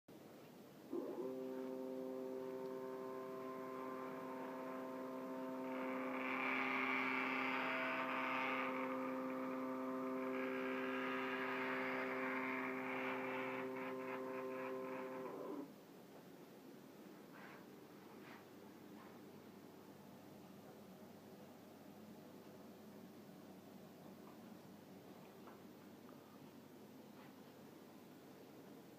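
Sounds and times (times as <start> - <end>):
stepper motor humming whine: 0.9 - 15.7.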